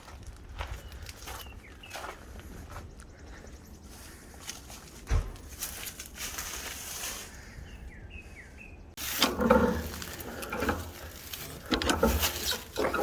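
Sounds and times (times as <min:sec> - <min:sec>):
thump: 0:05.1 - 0:05.4
rustling and knocking: 0:09.0 - 0:13.0.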